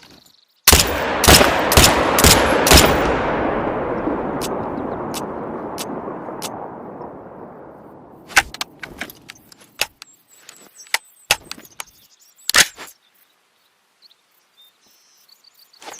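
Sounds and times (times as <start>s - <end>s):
rifle fire echoing: 0.7s - 8.3s.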